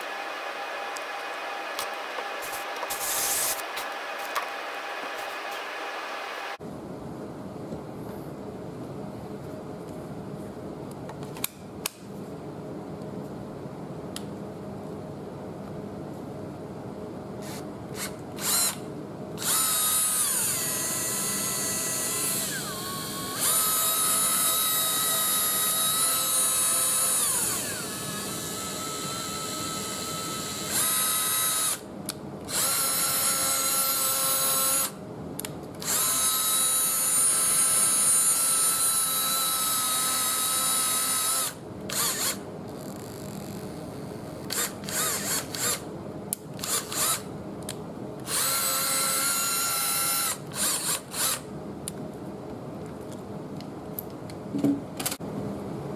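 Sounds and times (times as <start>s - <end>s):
impact driver motor whine: 0.0s - 6.6s.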